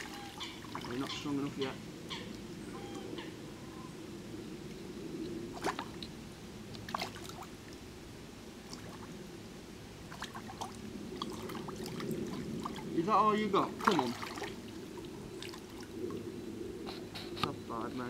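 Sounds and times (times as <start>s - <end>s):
sharp water splashes: 0.0s - 1.2s, 5.5s - 6.1s, 6.8s - 7.8s, 10.1s - 12.9s, 13.8s - 16.0s
water trickling and lapping: 0.0s - 3.0s, 4.6s - 17.4s.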